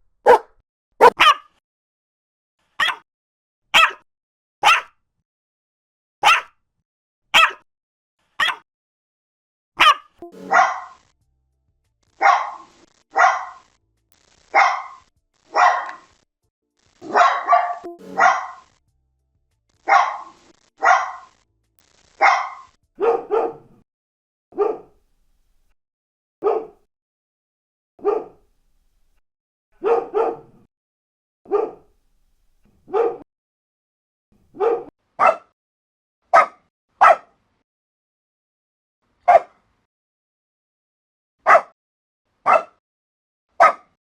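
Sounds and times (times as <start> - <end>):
dog barking sharply: 0.2 - 1.5, 2.8 - 3.0, 3.8 - 4.0, 4.6 - 4.9, 6.2 - 6.5, 7.4 - 7.6, 8.4 - 8.6, 9.8 - 10.9, 12.2 - 13.6, 14.6 - 16.0, 17.0 - 18.6, 19.9 - 21.3, 22.2 - 23.7, 24.6 - 24.9, 26.4 - 26.8, 28.0 - 28.3, 29.8 - 30.4, 31.5 - 31.8, 32.9 - 33.2, 34.6 - 35.5, 36.3 - 37.3, 39.3 - 39.6, 41.5 - 41.8, 42.5 - 42.8, 43.6 - 44.0
second dog barking: 0.3 - 1.4, 3.8 - 4.0, 4.6 - 4.9, 6.2 - 6.5, 7.4 - 7.6, 9.8 - 11.0, 12.2 - 13.6, 14.6 - 16.0, 17.0 - 18.6, 19.9 - 21.3, 22.2 - 23.7, 24.6 - 25.0, 26.4 - 26.8, 28.0 - 28.4, 29.8 - 30.5, 31.5 - 31.9, 32.9 - 33.2, 34.5 - 35.5, 36.3 - 37.3, 39.3 - 39.6, 41.5 - 41.8, 42.5 - 42.8, 43.6 - 44.0.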